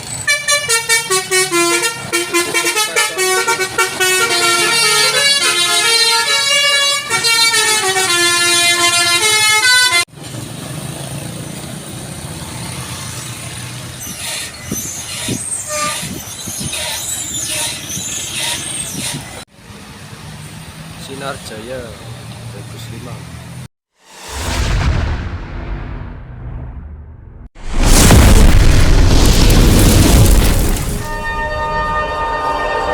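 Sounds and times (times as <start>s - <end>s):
traffic: 0.0s - 24.3s
multi-tone bus air horn melody: 0.2s - 10.1s, 15.6s - 16.1s, 31.2s - 32.9s.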